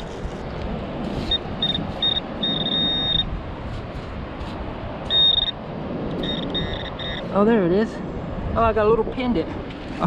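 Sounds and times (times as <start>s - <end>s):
metal detector beeping: 1.2s - 3.3s, 5.1s - 5.6s, 6.2s - 7.4s.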